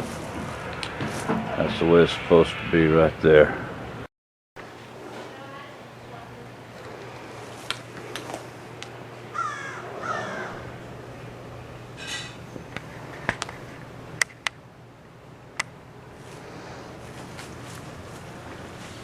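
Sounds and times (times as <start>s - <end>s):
bird harsh cries: 9.3s - 10.8s.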